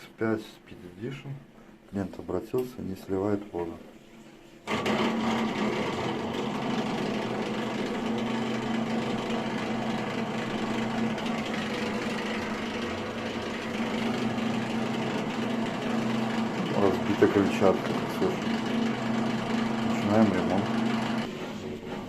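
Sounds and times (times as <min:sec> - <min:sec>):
washing machine drain pump running: 0:04.6 - 0:22.0.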